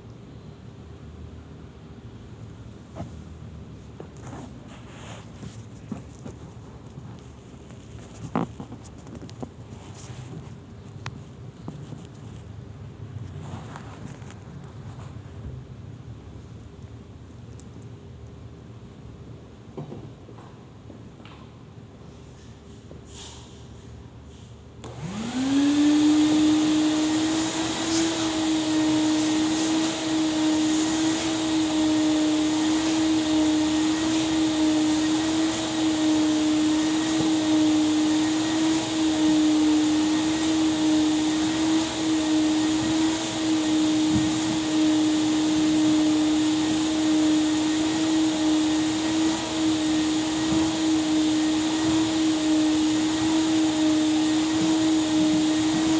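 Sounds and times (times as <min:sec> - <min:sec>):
vacuum cleaner running: 0:24.8 - 0:55.9.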